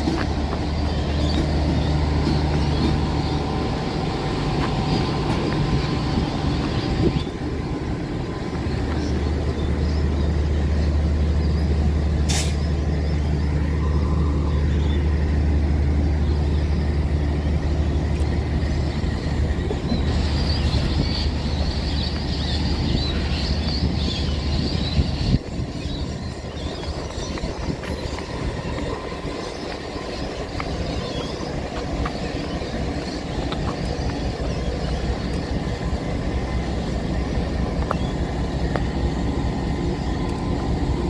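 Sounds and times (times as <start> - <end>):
locomotive engine humming: 0.0 - 41.0
short sharp hiss: 12.3 - 12.6.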